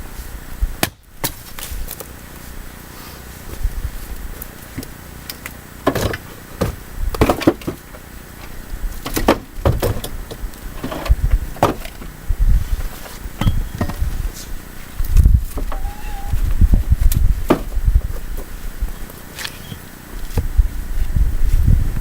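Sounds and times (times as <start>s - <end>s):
axe chopping wood: 0.8s - 1.4s.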